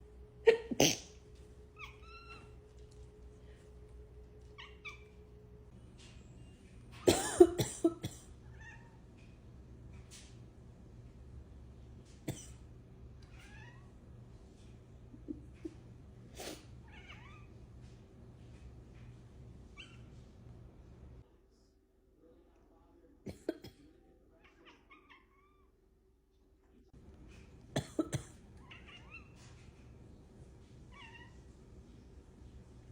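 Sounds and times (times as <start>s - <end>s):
person coughing: 0.5s - 1.2s, 7.0s - 8.3s, 27.8s - 28.4s
cat mewing: 1.7s - 2.6s, 4.4s - 5.3s, 13.3s - 13.9s, 16.8s - 17.5s, 28.6s - 29.5s, 30.9s - 31.4s.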